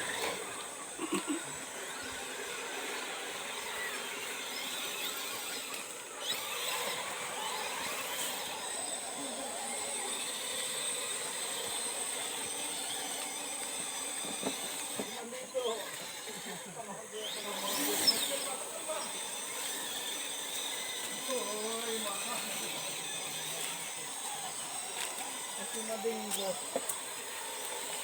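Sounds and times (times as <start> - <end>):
electric motor and gears whining: 0.0 - 28.0.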